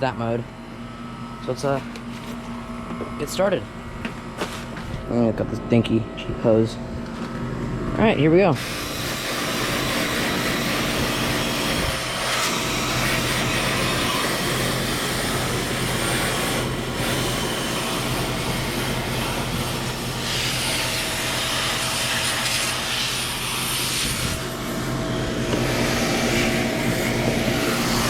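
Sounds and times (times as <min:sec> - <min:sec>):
air conditioner unit humming: 0:00.0 - 0:28.0
garden hose spraying water: 0:08.6 - 0:28.0.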